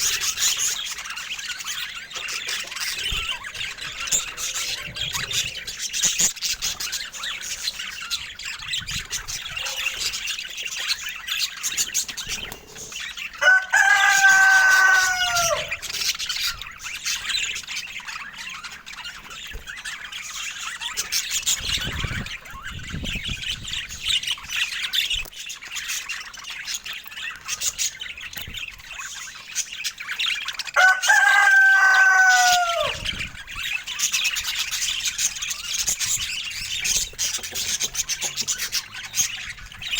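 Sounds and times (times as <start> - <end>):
budgerigars chattering: 0.0 - 39.9
loud long bird call: 13.4 - 16.2, 30.8 - 33.5.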